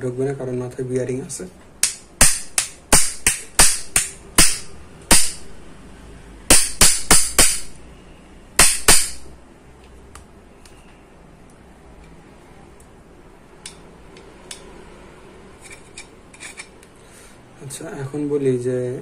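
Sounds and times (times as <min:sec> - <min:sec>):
sharp metallic knocks: 0:01.8 - 0:05.5, 0:06.5 - 0:07.8, 0:08.6 - 0:09.3.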